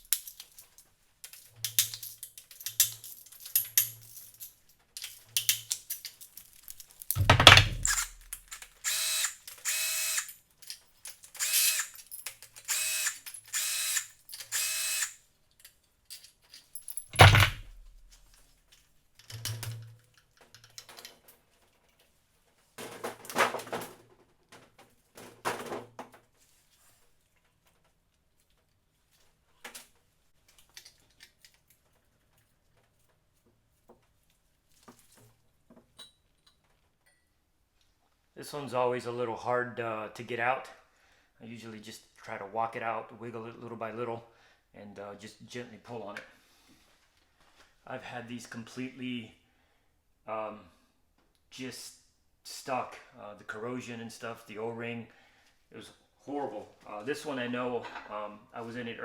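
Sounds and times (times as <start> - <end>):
power driver whirring: 7.4 - 10.3, 12.7 - 15.1
metal clatter: 16.8 - 18.2.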